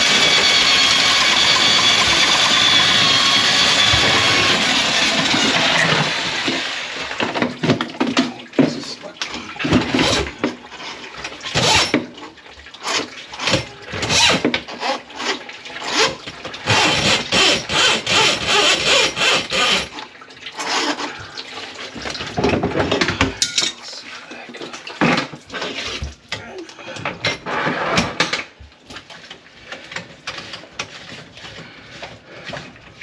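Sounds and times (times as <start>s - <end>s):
water sloshing and splashing: 3.8s - 16.7s, 19.2s - 27.7s, 28.4s - 33.0s.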